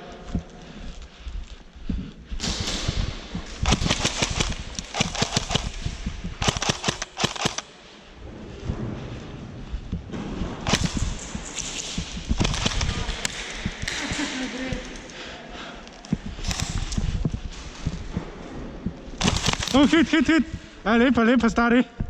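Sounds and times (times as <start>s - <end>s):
airsoft guns firing bursts: 2.5s - 7.7s, 10.7s - 15.0s, 19.2s - 20.4s.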